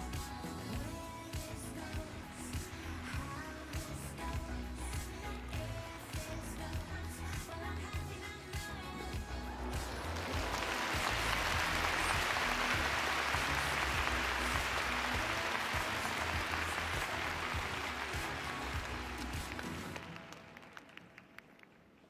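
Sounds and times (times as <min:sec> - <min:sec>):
background music: 0:00.0 - 0:21.4
crowd applauding: 0:09.7 - 0:22.0.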